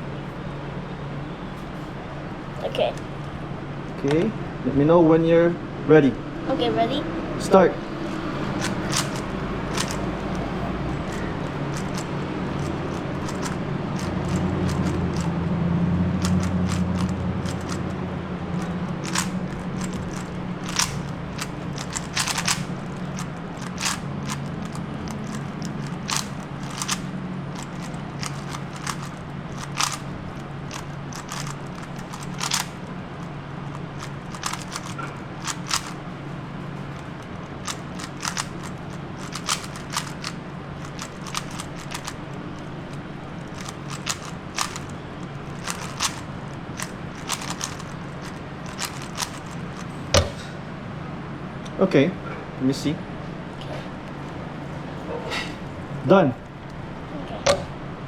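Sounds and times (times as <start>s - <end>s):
low steady hum: 0.0s - 58.0s
plastic puzzle cube clicking: 8.1s - 15.4s, 16.1s - 32.9s, 33.7s - 36.0s, 37.0s - 50.3s.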